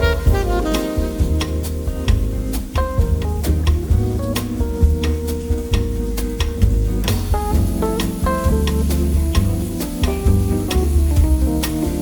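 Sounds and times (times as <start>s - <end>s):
instrumental jazz music: 0.0s - 12.0s.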